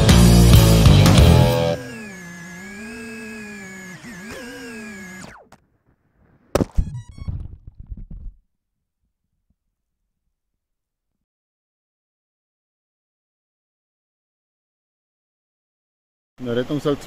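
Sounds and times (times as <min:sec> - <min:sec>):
rock music: 0:00.0 - 0:01.8
drone motors whining: 0:00.0 - 0:07.9
sharp knock: 0:06.5 - 0:07.0.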